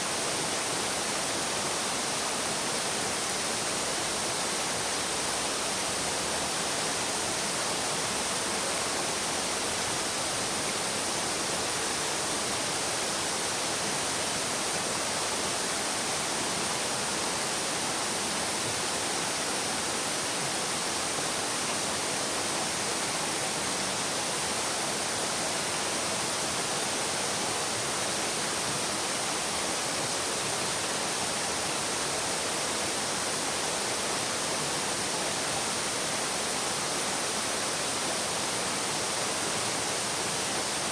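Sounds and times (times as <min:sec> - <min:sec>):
brook running water: 0:00.0 - 0:40.9.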